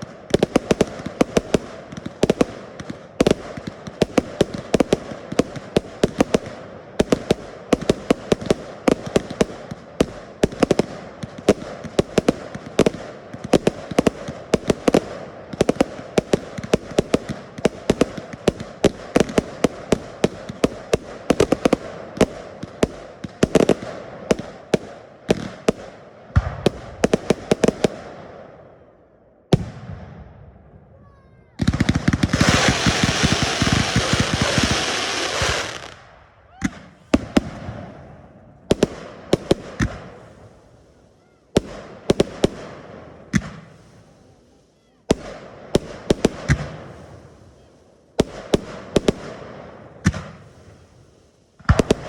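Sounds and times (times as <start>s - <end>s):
fireworks bangs: 0.0s - 28.9s, 29.5s - 52.0s.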